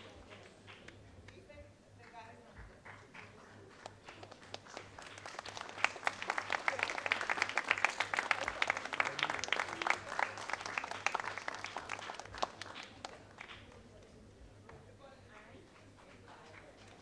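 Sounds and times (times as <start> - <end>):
audience applause: 2.6 - 14.2, 15.6 - 17.0.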